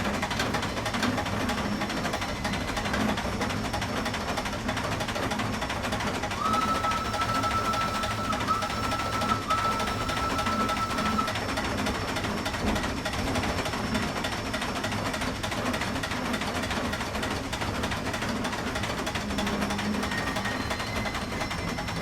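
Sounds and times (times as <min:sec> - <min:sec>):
steam crane clattering and hissing: 0:00.0 - 0:22.0
thin high steady tone: 0:06.4 - 0:11.4.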